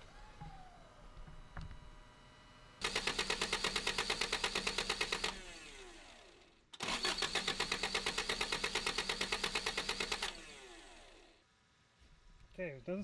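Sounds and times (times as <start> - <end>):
engine cranking over: 2.8 - 11.3
starter whining down: 2.8 - 11.3.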